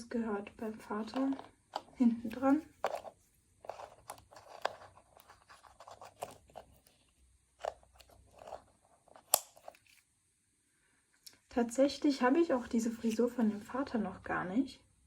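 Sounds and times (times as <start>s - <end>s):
plastic packaging crinkling: 2.3s - 7.0s.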